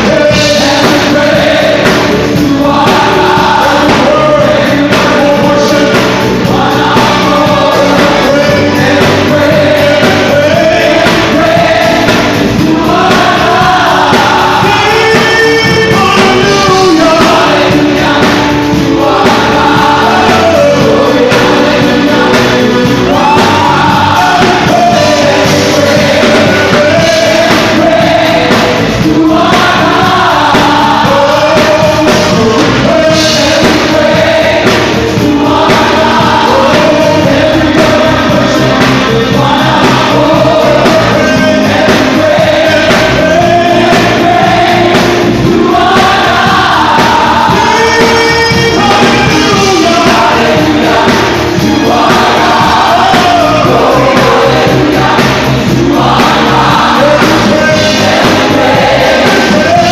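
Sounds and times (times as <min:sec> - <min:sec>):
band playing a steady beat: 0:00.0 - 0:59.9
choir singing: 0:00.0 - 0:59.9.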